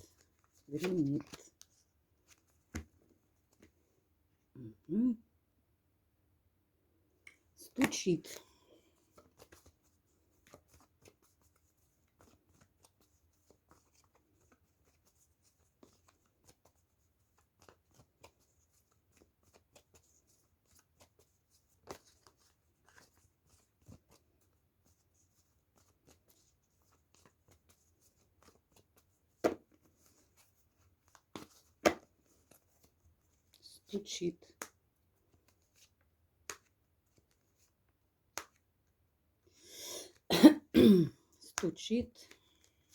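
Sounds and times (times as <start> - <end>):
cards shuffling: 0.1 - 3.7, 9.1 - 24.5, 25.4 - 33.4, 34.6 - 37.7.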